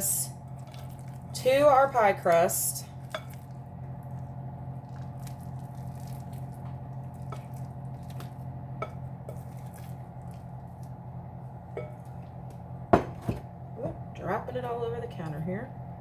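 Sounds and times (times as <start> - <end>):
steady low hum: 0.0 - 16.0
pie filling squishing: 0.4 - 12.5.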